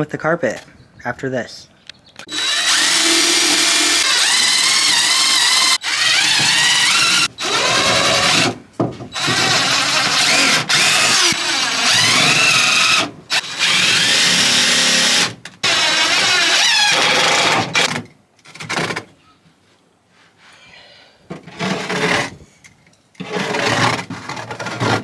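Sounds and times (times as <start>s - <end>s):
power drill running: 2.3s - 8.6s, 9.2s - 17.9s.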